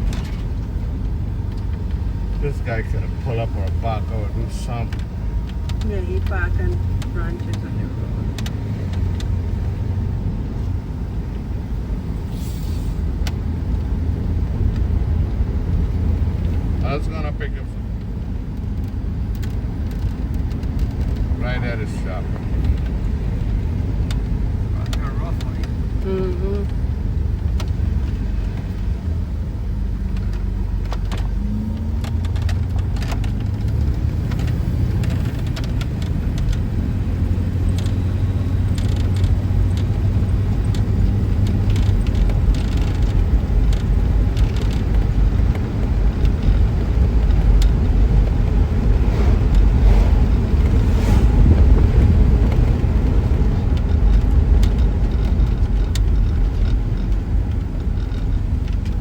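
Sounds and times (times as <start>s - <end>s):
car engine and tyre rumble: 0.0s - 59.0s
light clicks and rattles: 18.0s - 26.0s, 30.0s - 48.3s, 52.4s - 59.0s.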